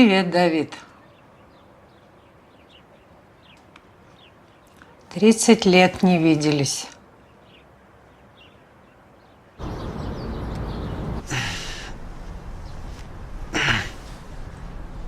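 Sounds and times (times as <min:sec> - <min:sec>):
low background hum: 0:09.6 - 0:15.0
person sighing: 0:11.2 - 0:12.0, 0:13.5 - 0:14.2.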